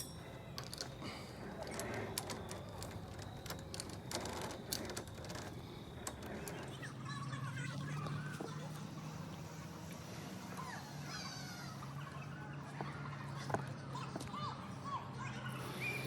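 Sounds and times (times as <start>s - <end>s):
climbing gear clicking: 0.0s - 6.9s
faint murmur of voices: 6.0s - 16.0s.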